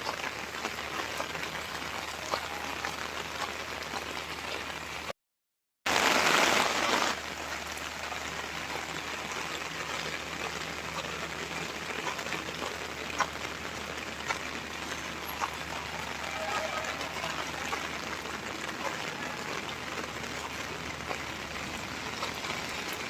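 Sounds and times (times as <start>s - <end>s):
sharp raindrops: 0.0s - 5.1s, 5.9s - 23.0s
steady rain falling: 0.0s - 5.1s, 5.9s - 23.0s.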